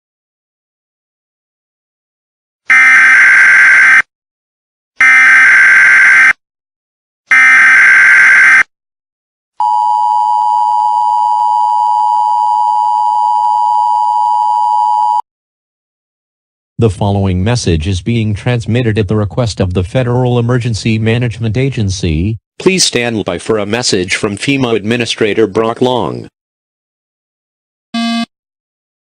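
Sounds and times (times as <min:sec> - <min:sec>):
two-tone attention signal: 0:28.0 - 0:28.3.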